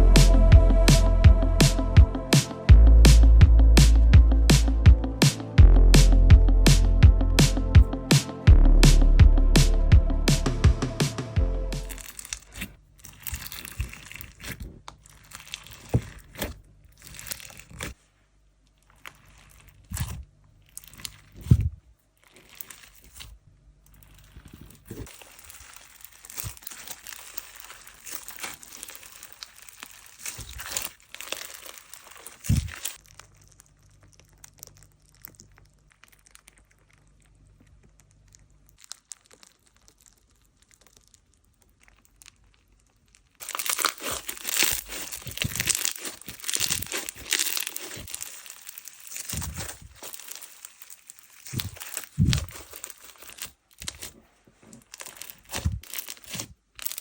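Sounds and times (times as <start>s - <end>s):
slime crinkling and crackling: 11.8s - 57.0s.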